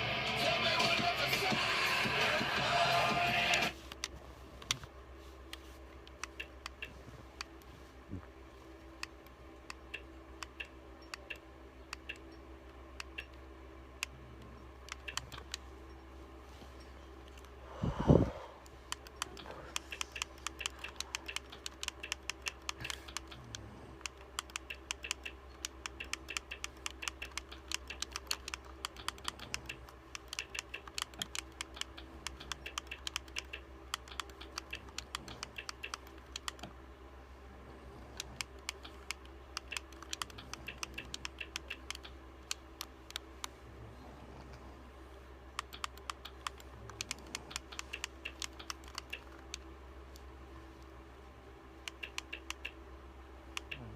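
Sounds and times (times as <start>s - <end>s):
steady low hum: 0.0s - 53.9s
keyboard typing clicks: 6.1s - 7.5s, 9.0s - 12.4s, 13.0s - 13.4s, 14.8s - 15.6s, 18.9s - 36.8s, 38.2s - 43.5s, 45.6s - 50.2s, 51.8s - 52.8s, 53.6s - 53.9s.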